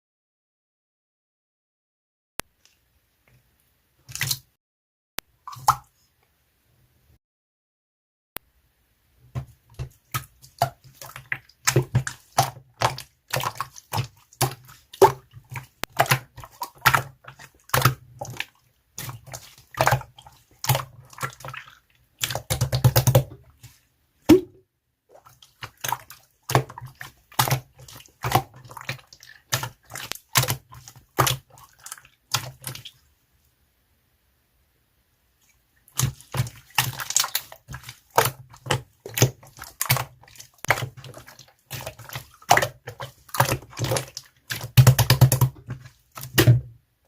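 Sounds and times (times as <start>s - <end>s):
slime squelching: 4.0s - 4.5s, 9.4s - 33.1s, 35.4s - 46.7s.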